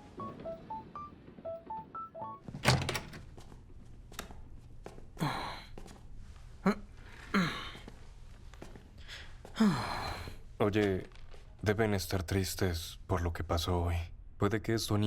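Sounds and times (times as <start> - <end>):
person sighing: 5.2 - 5.7, 6.6 - 7.8, 9.6 - 10.4.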